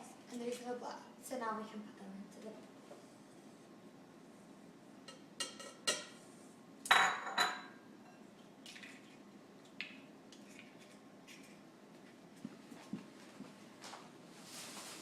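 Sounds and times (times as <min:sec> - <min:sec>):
bowls and utensils clinking: 0:06.9 - 0:08.2.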